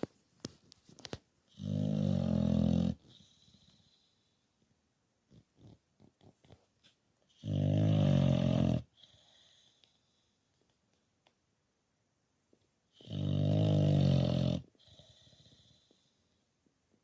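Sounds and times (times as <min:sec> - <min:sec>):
dog snoring: 0:01.5 - 0:04.2, 0:07.3 - 0:09.9, 0:12.9 - 0:16.1.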